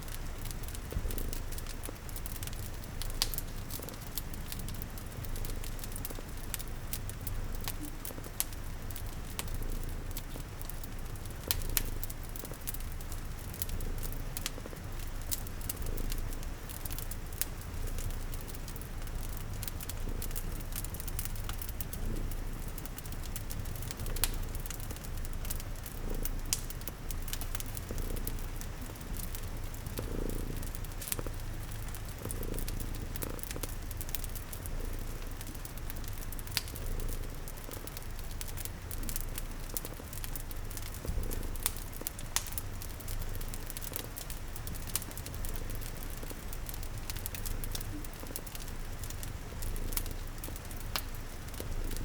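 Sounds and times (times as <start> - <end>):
cat purring: 0.0 - 52.0
rain patter: 0.0 - 52.0
wood fire crackling: 0.0 - 52.0.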